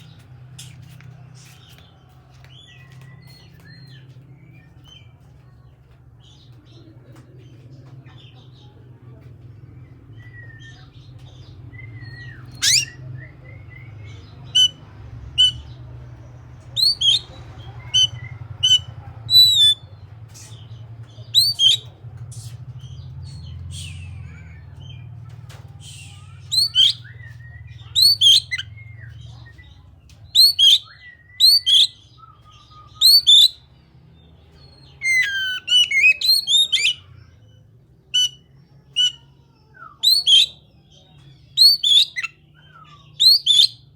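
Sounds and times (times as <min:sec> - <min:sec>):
songbird whistles and chirps: 0:11.7 - 0:15.8, 0:16.8 - 0:19.8, 0:21.3 - 0:22.6, 0:25.8 - 0:33.7, 0:34.8 - 0:37.2, 0:38.1 - 0:43.9.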